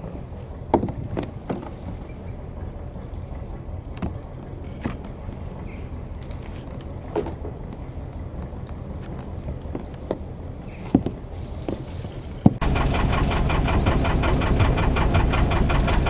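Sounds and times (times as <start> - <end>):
inboard boat engine running: 12.6 - 16.0.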